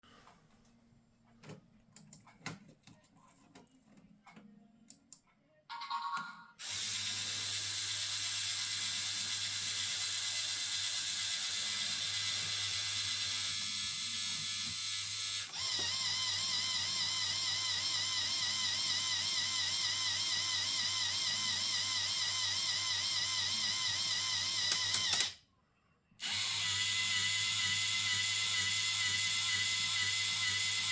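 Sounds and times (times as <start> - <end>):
mechanism clicking and ticking: 24.5 - 25.4.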